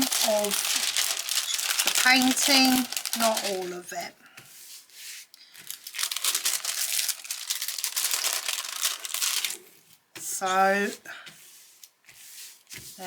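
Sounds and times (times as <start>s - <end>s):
plastic packaging crinkling: 0.0s - 4.1s, 5.5s - 9.8s.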